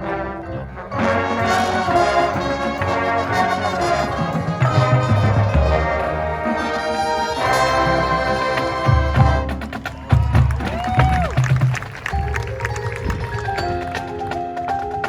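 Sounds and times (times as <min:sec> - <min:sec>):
brass section playing chords: 0:00.0 - 0:09.8
heavy low brass notes: 0:00.0 - 0:13.5.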